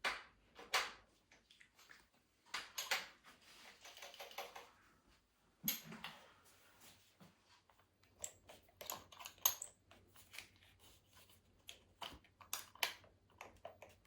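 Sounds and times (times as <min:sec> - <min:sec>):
tools and metal hardware clicking: 0:08.2 - 0:09.8.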